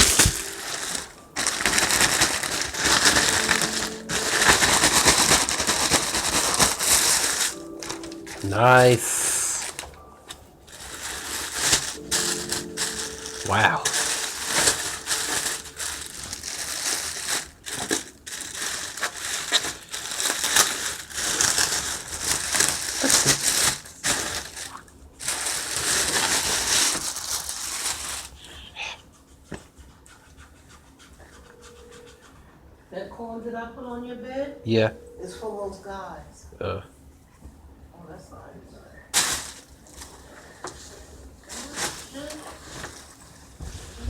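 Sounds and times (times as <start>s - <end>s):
packaging crinkling and rustling: 0.0s - 28.4s, 39.1s - 44.0s.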